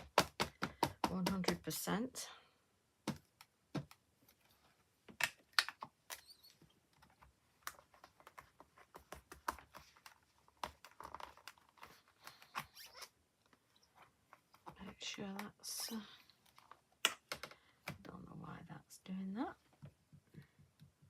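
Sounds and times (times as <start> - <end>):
craft supplies clicking and tapping: 0.0 - 1.8, 3.0 - 4.0.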